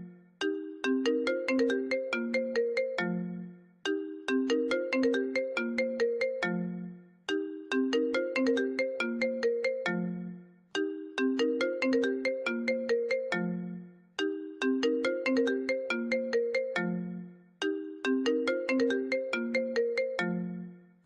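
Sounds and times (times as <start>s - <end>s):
phone ringtone melody: 0.0s - 20.6s.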